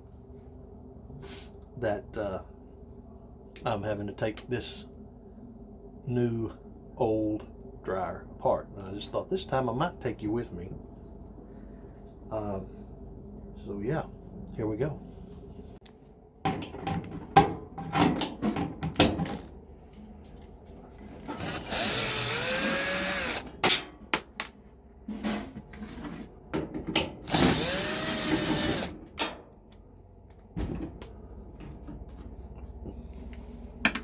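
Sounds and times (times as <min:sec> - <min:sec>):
power drill driving screws: 0:21.4 - 0:23.5, 0:27.3 - 0:28.9.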